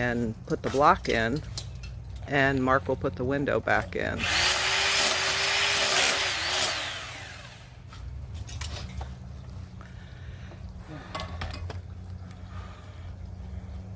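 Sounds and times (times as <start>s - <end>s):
power tool winding down: 4.2s - 7.8s
low steady hum: 6.8s - 13.9s.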